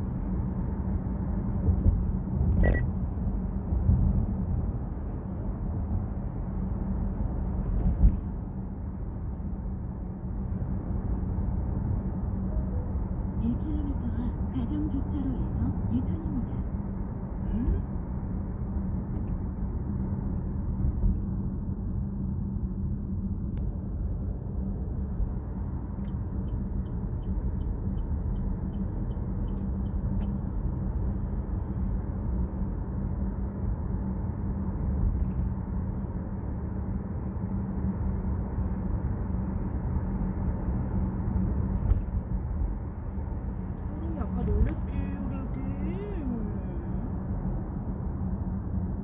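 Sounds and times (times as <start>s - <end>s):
car road and engine rumble: 0.0s - 49.0s
turn signal ticking: 26.0s - 30.8s.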